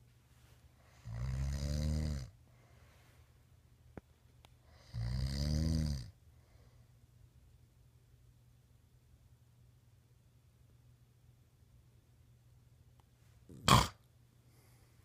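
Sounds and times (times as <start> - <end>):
man snoring: 1.0 - 2.3, 4.7 - 6.1, 13.5 - 14.0.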